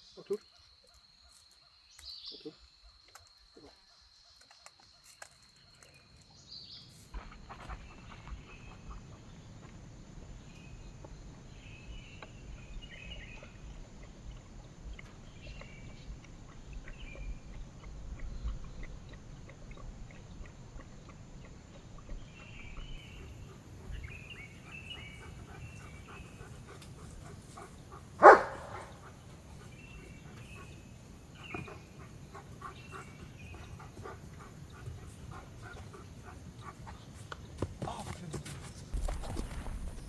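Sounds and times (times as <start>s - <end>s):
faint birdsong: 0.0s - 40.0s
dog barking: 24.6s - 29.3s.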